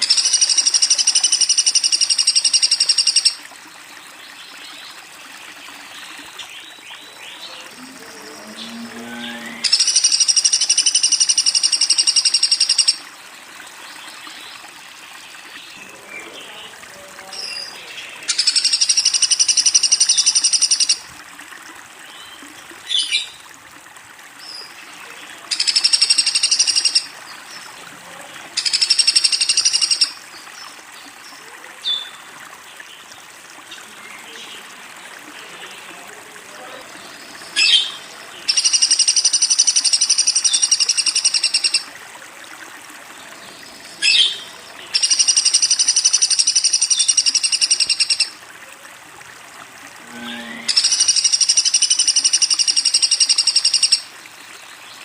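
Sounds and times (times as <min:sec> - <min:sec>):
woodpecker rattling trill: 0:00.0 - 0:03.4, 0:09.6 - 0:13.0, 0:18.3 - 0:21.0, 0:25.5 - 0:27.1, 0:28.6 - 0:30.1, 0:38.5 - 0:41.8, 0:44.9 - 0:48.3, 0:50.7 - 0:54.0.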